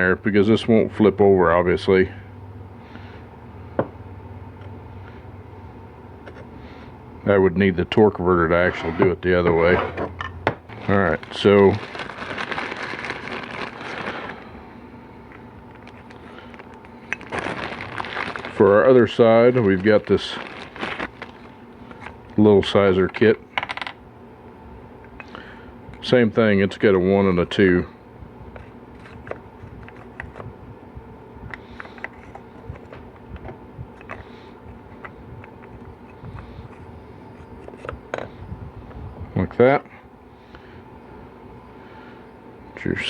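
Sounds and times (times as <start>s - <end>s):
faint steady hum: 0.0s - 43.0s
tools rustling and clicking: 15.3s - 22.3s, 31.5s - 38.3s.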